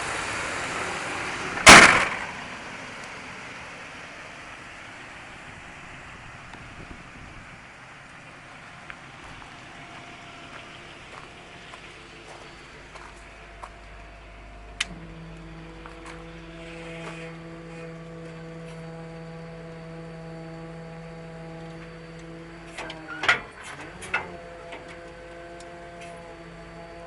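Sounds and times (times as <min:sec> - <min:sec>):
machine humming: 0:00.0 - 0:27.0
click: 0:14.8 - 0:15.0.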